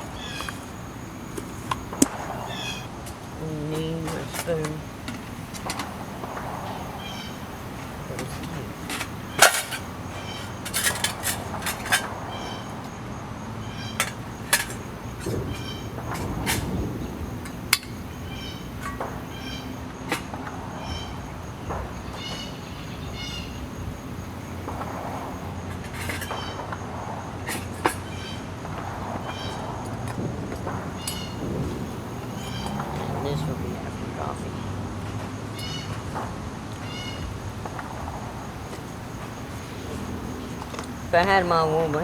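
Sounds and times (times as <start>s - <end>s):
bird calling: 0.0s - 26.8s, 27.6s - 29.9s, 30.7s - 34.7s, 35.6s - 36.1s, 36.8s - 42.0s.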